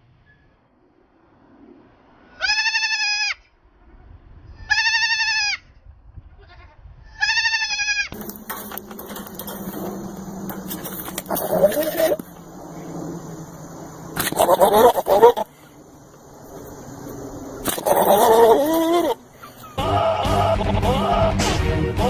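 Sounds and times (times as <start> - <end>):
goat bleat: 2.4 - 3.4, 4.6 - 5.6, 6.4 - 8.2, 11.0 - 12.3, 14.2 - 15.5, 17.6 - 21.2
goat screaming: 2.4 - 3.4, 4.7 - 5.6, 7.2 - 8.2, 11.0 - 12.4, 14.2 - 15.5, 17.6 - 21.0.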